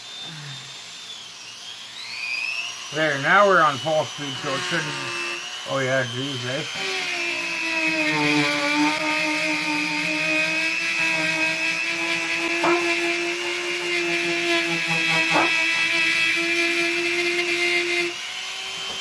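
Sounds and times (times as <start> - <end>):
rotary tool high whine: 0.0 - 19.0.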